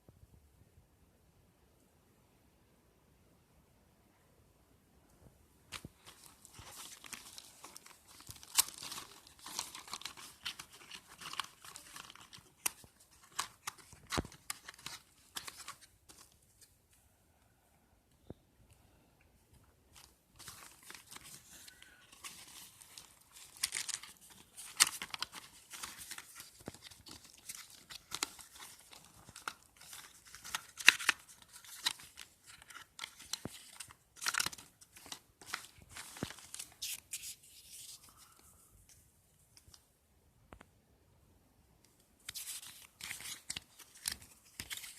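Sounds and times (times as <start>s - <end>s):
packaging crinkling and tearing: 5.7s - 16.7s, 19.9s - 38.3s, 42.2s - 44.9s.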